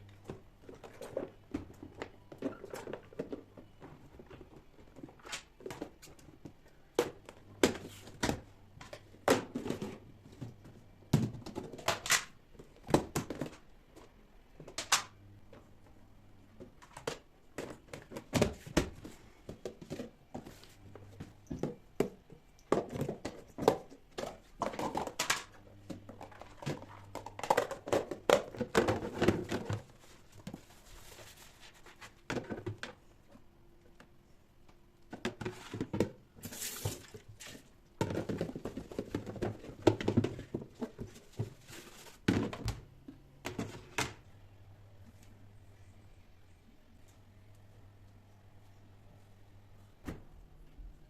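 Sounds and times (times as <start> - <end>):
objects knocking and thunking: 0.1 - 14.9, 16.4 - 30.7, 32.0 - 33.4, 35.1 - 44.2.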